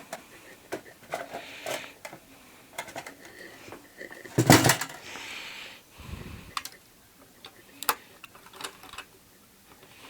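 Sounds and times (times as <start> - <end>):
plastic clatter: 0.0 - 2.2, 2.8 - 5.0, 7.8 - 9.1.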